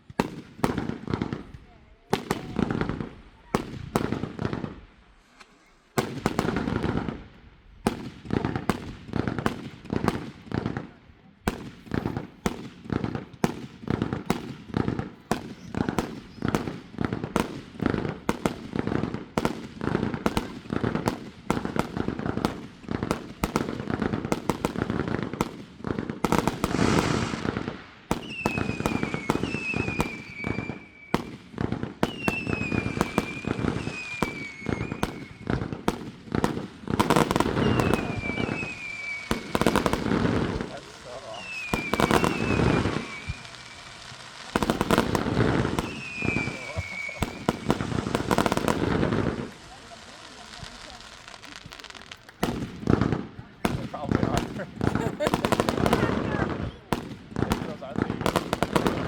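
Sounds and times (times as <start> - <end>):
fireworks banging and popping: 0.0 - 59.0
falling firework whistles: 15.3 - 16.8, 26.2 - 35.9, 37.0 - 52.0.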